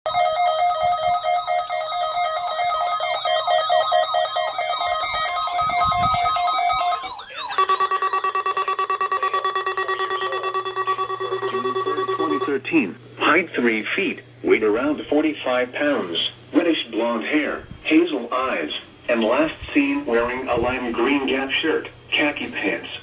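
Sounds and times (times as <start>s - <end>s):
rapidly pulsing beep: 0.1s - 12.5s
warbling electronic alert tone: 0.1s - 12.5s.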